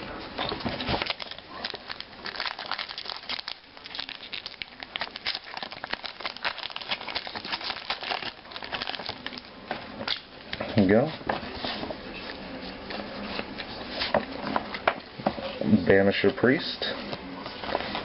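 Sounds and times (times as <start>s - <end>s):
foil wrapper tearing and crinkling: 0.8s - 9.5s.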